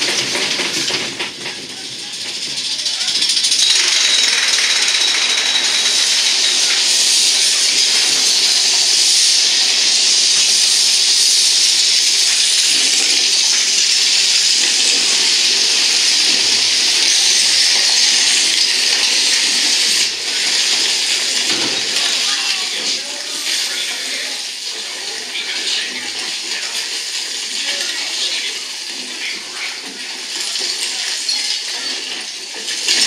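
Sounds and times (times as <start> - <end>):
loud rushing hiss: 4.9 - 21.5.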